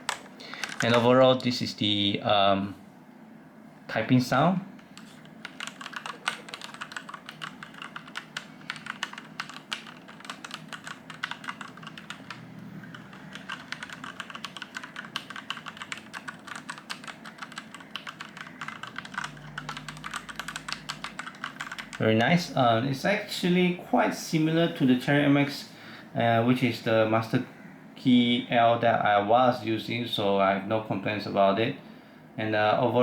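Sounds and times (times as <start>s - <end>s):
mechanical keyboard typing: 0.0s - 1.1s, 5.0s - 22.0s.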